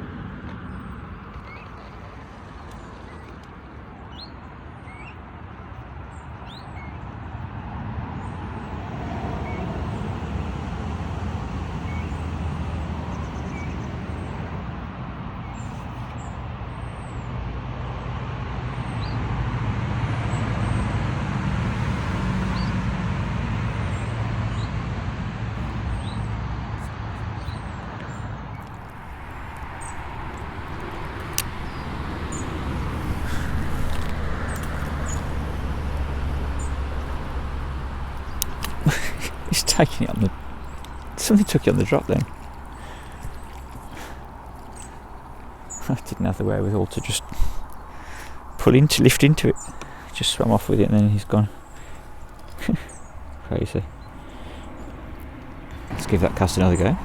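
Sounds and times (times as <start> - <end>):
passing motor traffic rumble: 19.2 - 26.8, 27.7 - 57.0
small birds chirping: 27.4 - 57.0.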